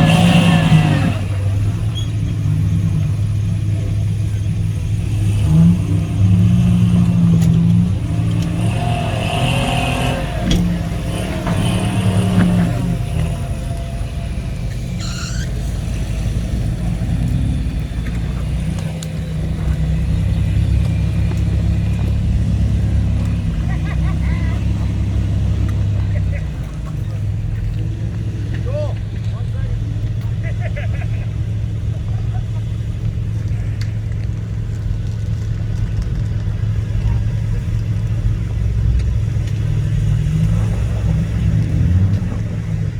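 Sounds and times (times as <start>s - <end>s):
off-road vehicle engine revving: 0.0s - 42.9s
high squeak: 8.8s - 16.3s.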